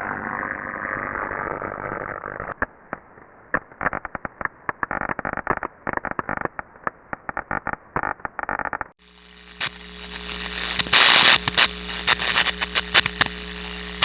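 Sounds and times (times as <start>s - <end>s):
sharp crackling pops: 2.5s - 14.0s
steady hiss: 9.0s - 14.0s.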